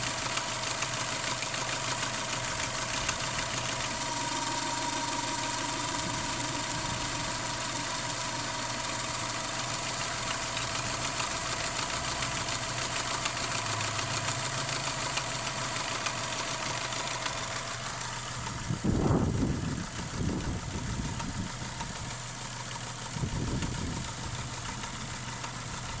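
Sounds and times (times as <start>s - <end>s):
car engine idling: 0.0s - 26.0s
steady knocking from engine: 0.0s - 26.0s
loud low rumble: 18.4s - 21.5s.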